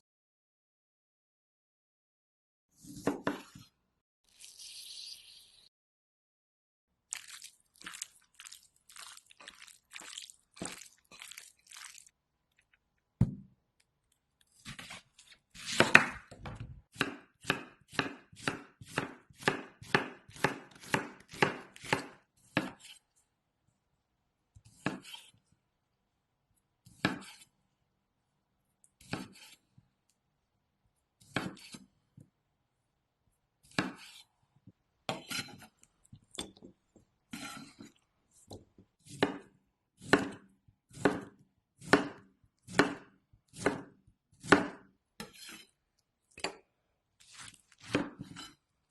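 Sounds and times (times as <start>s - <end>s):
knife chopping on cutting board: 14.6s - 23.0s, 24.6s - 25.3s, 26.9s - 27.5s, 29.0s - 29.6s, 31.2s - 31.8s, 33.7s - 34.2s, 39.1s - 45.6s, 47.8s - 48.6s.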